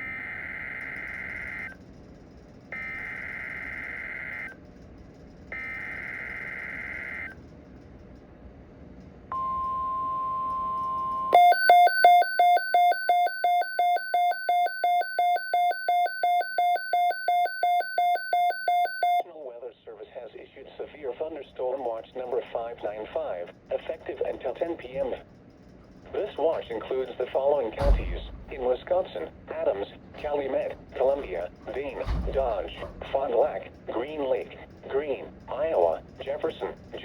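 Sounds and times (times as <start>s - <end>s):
steady warning alarm tone: 0.0s - 1.8s, 2.7s - 4.6s, 5.5s - 7.4s, 9.3s - 19.2s, 26.1s - 37.0s
loud pulsed alarm beeping: 9.3s - 19.2s, 27.8s - 28.9s, 30.2s - 33.3s.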